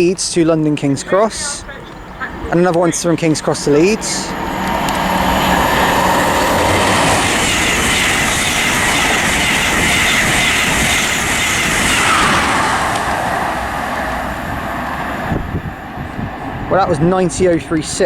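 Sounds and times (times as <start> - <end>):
train passing at speed: 0.0 - 18.0
wheels clattering over rail joints: 0.0 - 18.0.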